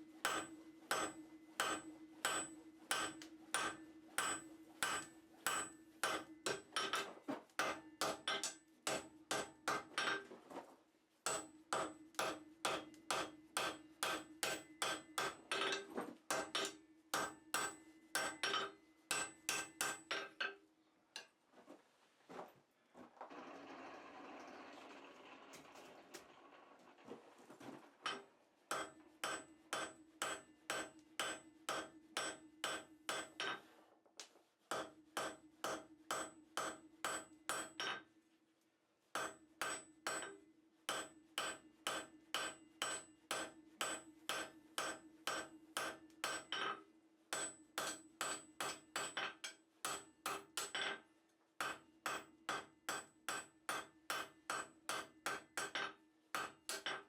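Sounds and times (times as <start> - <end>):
hammer striking steel on anvil: 0.2 - 10.2, 11.3 - 20.6, 28.1 - 33.6, 34.7 - 38.0, 39.2 - 51.0, 51.6 - 57.0.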